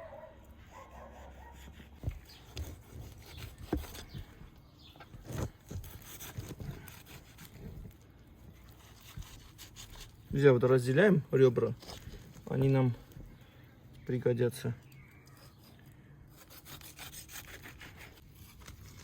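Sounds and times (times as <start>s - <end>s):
knife cutting and scraping meat: 0.6s - 10.4s, 15.2s - 19.0s.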